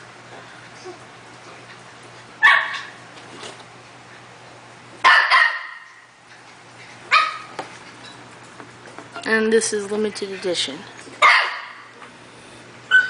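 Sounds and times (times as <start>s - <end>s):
dog barking: 2.4s - 2.9s, 5.0s - 5.9s, 7.1s - 7.5s, 11.2s - 11.9s.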